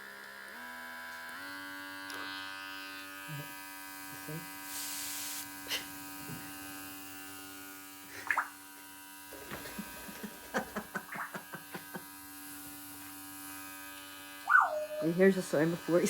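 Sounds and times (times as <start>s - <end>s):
electric appliance buzzing: 0.0s - 16.0s
parrot clicks and chirps: 14.5s - 15.0s
parrot whistle call: 14.5s - 15.1s.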